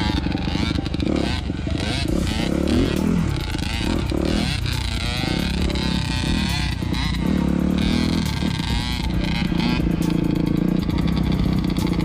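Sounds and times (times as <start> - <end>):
dirt bike engine revving: 0.0 - 12.0.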